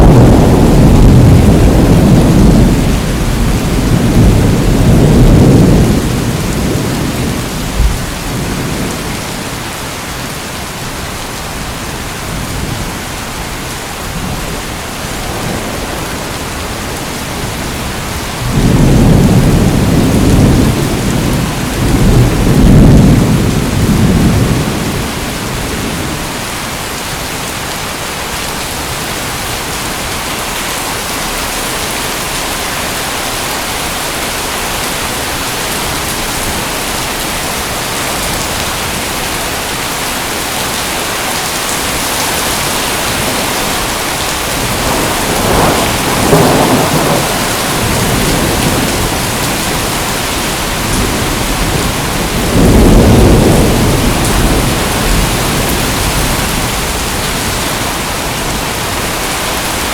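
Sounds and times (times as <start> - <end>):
rolling thunder: 0.0 - 9.8, 14.1 - 26.4, 41.6 - 59.9
steady rain falling: 0.0 - 59.9.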